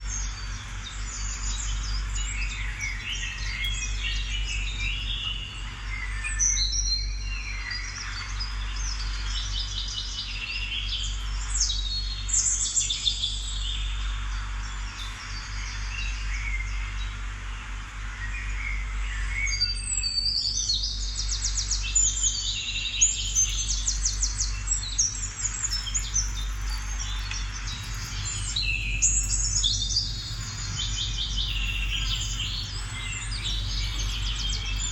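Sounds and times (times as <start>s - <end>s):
steady low hum: 0.0s - 12.7s, 21.0s - 34.9s
birds chirping and singing: 0.1s - 8.7s, 21.6s - 34.9s.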